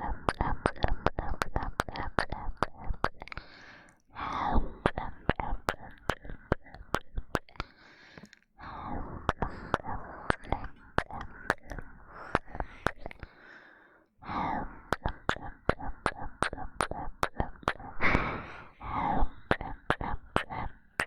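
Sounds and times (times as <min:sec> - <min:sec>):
kissing lip smacks: 0:09.3 - 0:11.8, 0:14.9 - 0:18.2, 0:19.5 - 0:20.8
breathy noise: 0:17.6 - 0:20.8.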